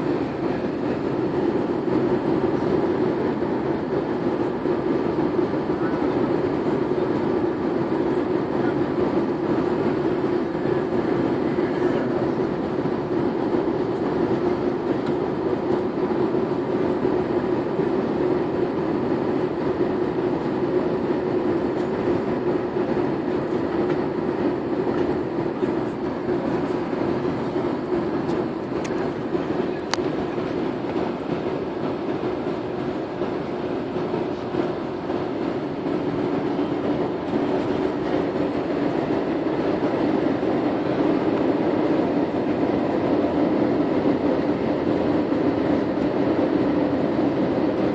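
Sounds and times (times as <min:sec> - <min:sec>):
airliner cabin engine roar: 0:00.0 - 0:47.9.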